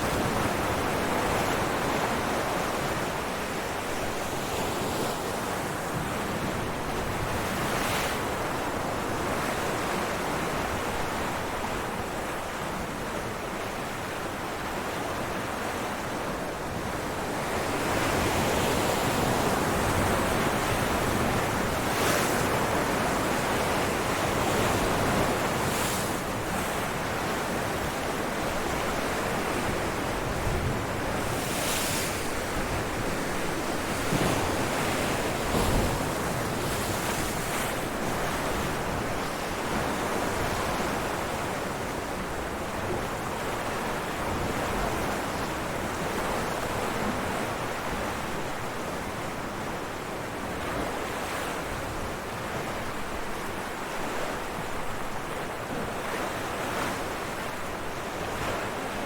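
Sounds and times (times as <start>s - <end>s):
ocean waves breaking on rocks: 17.4s - 41.4s.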